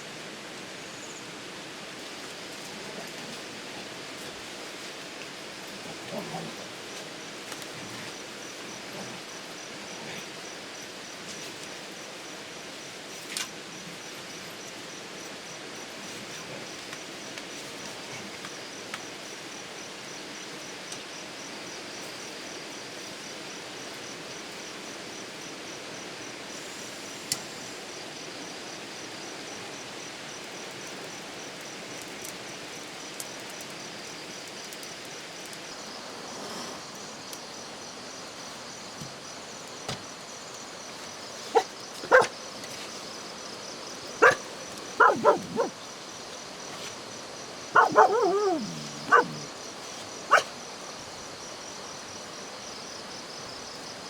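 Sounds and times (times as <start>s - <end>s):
outdoor background hiss: 0.0s - 54.0s
dog barking and yipping: 41.5s - 42.3s, 44.2s - 45.7s, 47.8s - 49.5s, 50.3s - 50.5s.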